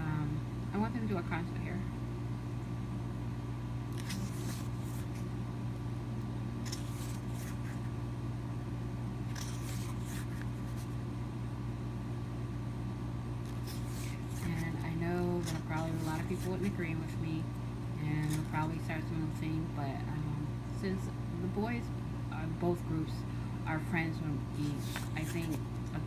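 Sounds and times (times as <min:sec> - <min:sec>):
steady low hum: 0:00.0 - 0:26.0
paper pages rustling: 0:03.9 - 0:05.3, 0:06.6 - 0:07.9, 0:09.3 - 0:11.0, 0:13.4 - 0:16.9, 0:18.2 - 0:18.8, 0:24.6 - 0:25.9.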